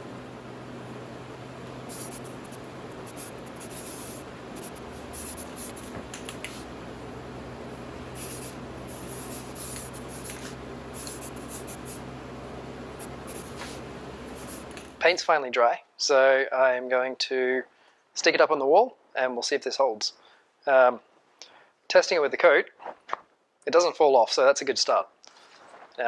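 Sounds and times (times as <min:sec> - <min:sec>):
fan humming: 0:00.0 - 0:15.2
aerosol spray can hissing: 0:01.6 - 0:06.8, 0:08.0 - 0:12.1, 0:12.9 - 0:15.0.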